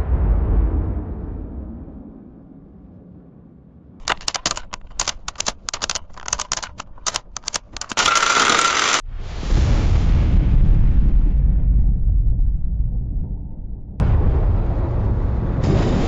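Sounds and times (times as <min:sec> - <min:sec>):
camera shutter clicks: 0:04.0 - 0:09.0
camera whirring: 0:04.0 - 0:09.0
low rumble: 0:09.1 - 0:16.0.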